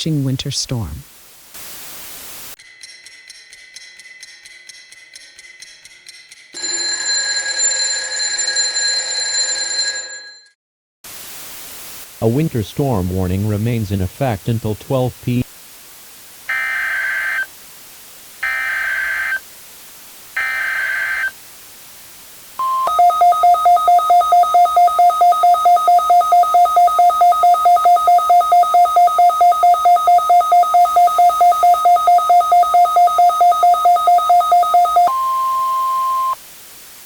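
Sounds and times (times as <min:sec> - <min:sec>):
short beep: 0:22.6 - 0:36.4
steady beep: 0:22.6 - 0:36.4
two-tone attention signal: 0:22.6 - 0:36.4
warbling data bursts: 0:22.6 - 0:36.4.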